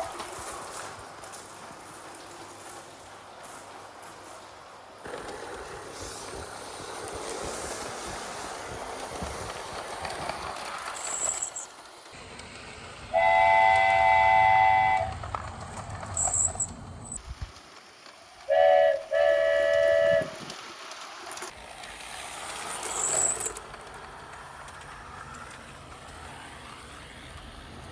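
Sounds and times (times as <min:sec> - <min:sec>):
train rolling noise: 0:00.0 - 0:27.9
train horn blasts: 0:13.1 - 0:15.3, 0:18.5 - 0:20.4.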